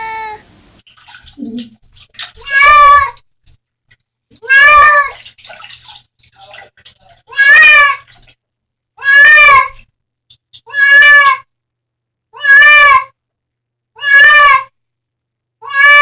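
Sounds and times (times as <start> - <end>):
cat meowing: 0.0 - 0.4, 2.4 - 3.2, 4.4 - 5.2, 7.3 - 8.1, 9.0 - 9.8, 10.6 - 11.5, 12.4 - 13.2, 14.0 - 14.7, 15.6 - 16.0.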